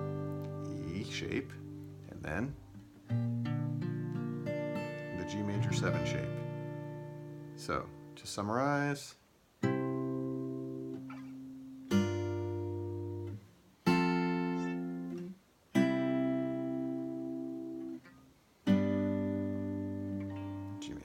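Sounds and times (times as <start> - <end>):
acoustic guitar chords ringing: 0.0 - 8.3, 9.6 - 21.0.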